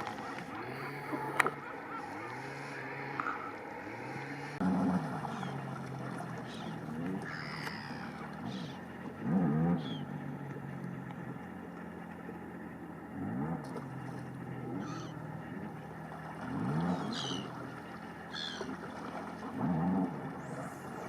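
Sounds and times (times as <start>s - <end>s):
low hoarse animal calls: 0.0s - 10.4s, 14.3s - 15.9s, 16.5s - 18.8s
small birds chirping: 16.9s - 17.5s, 18.3s - 18.7s.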